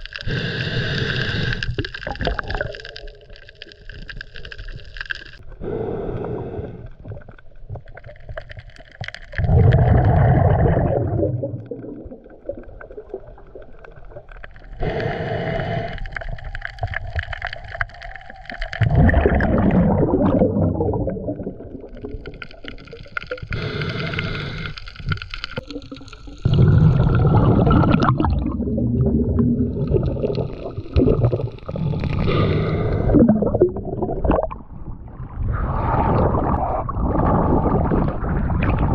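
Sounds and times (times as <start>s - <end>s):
underwater diver breathing: 0.0s - 2.2s, 4.1s - 7.5s, 9.3s - 12.0s, 14.5s - 25.6s, 26.4s - 34.5s
gurgling exhaled bubbles: 0.0s - 38.9s.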